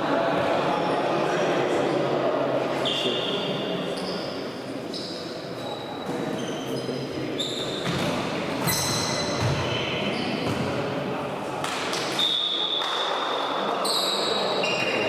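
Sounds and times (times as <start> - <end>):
echoing murmur of hall: 0.0 - 15.0
shoes squeaking on floor: 2.8 - 10.8, 13.8 - 15.0.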